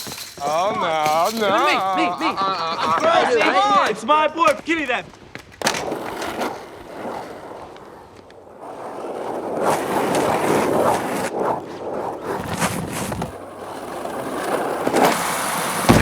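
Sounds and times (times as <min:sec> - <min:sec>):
skateboard clacks: 0:00.0 - 0:16.0
skateboard rolling over pavement: 0:05.3 - 0:16.0.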